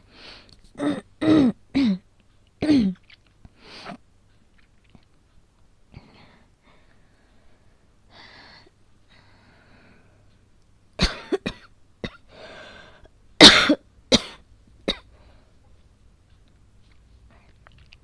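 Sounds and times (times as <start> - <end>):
woman coughing harshly: 0.8 - 2.0, 2.6 - 3.0, 11.0 - 12.3, 13.4 - 15.0.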